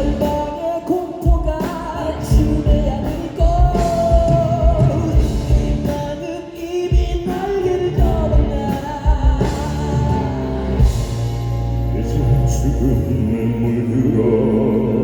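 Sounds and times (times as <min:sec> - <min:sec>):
male group singing: 0:00.0 - 0:11.0, 0:11.9 - 0:15.0
rock band playing: 0:00.0 - 0:13.2
heavy drum hits: 0:01.3 - 0:06.2, 0:06.9 - 0:11.6.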